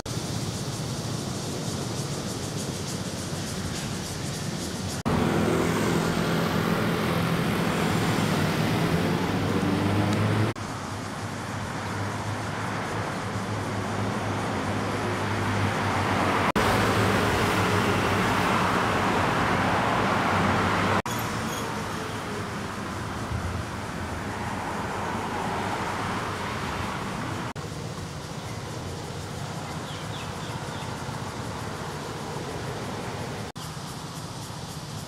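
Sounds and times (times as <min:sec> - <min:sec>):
low engine hum: 0:00.0 - 0:21.0
city street traffic: 0:00.0 - 0:35.0.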